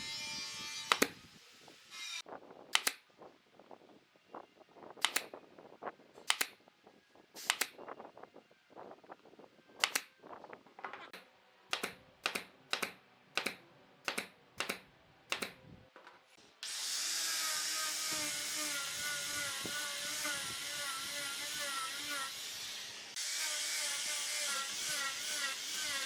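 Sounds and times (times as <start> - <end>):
handheld power tool running: 16.6 - 26.0.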